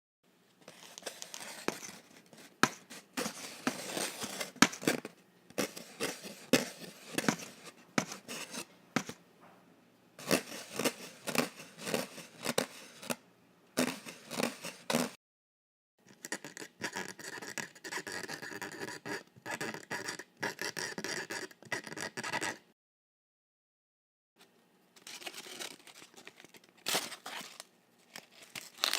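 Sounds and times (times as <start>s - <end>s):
scratching and scraping: 0.6s - 9.2s, 10.2s - 13.2s, 13.8s - 15.2s.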